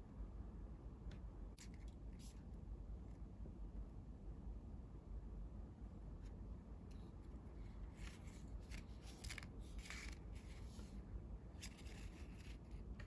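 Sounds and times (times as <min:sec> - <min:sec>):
paper folding and crinkling: 0:07.9 - 0:11.0, 0:11.6 - 0:13.0.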